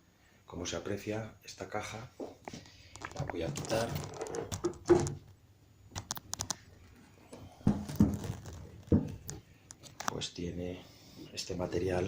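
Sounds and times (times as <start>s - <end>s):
box handling rustling and scraping: 7.7s - 10.0s.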